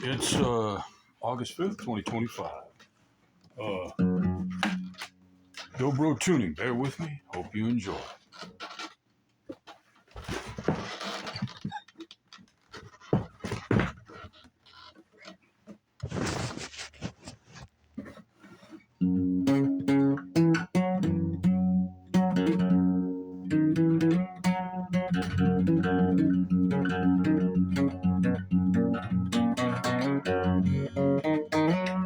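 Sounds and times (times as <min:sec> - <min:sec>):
guitar fingerpicking: 0:03.6 - 0:07.3, 0:18.0 - 0:32.0
scraping and brushing on guitar: 0:16.0 - 0:18.9.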